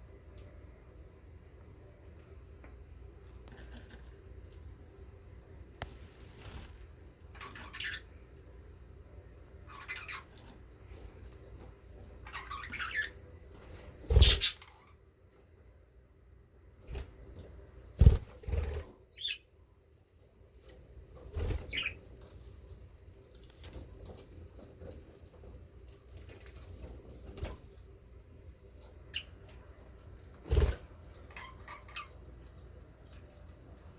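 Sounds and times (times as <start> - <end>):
budgies chirping: 7.4 - 8.1, 9.7 - 10.4, 12.2 - 13.2, 14.1 - 14.7, 19.1 - 19.4, 21.5 - 22.0
budgies flapping wings: 12.3 - 14.6, 21.3 - 22.0.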